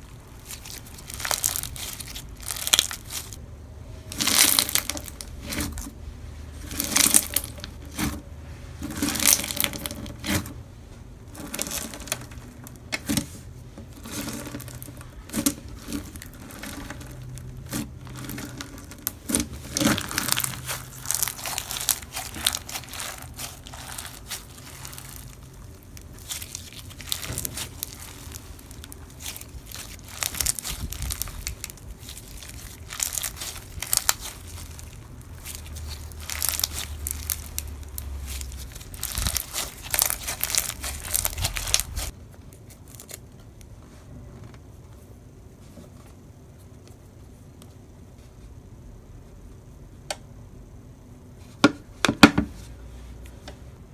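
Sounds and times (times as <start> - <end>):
slime squeezed with crunchy crackles: 0.0 - 10.6, 11.2 - 43.3.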